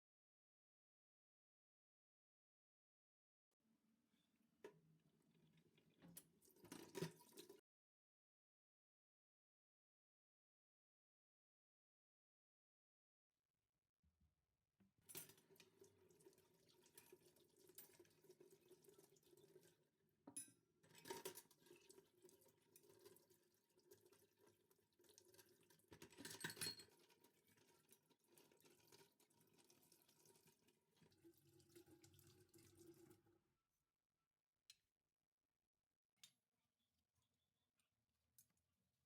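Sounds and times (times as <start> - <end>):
tap water running into sink: 5.8 - 7.6, 21.0 - 33.2.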